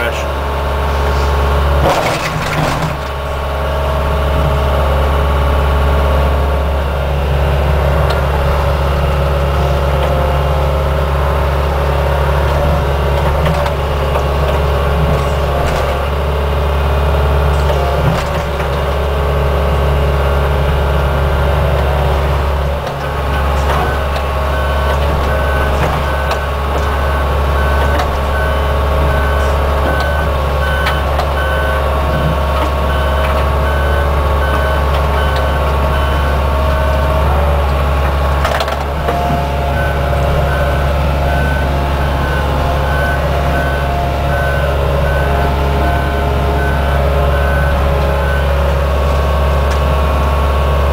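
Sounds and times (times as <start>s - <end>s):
excavator diesel engine running: 0.0s - 50.9s
warning alarm beeping rapidly: 39.2s - 48.7s.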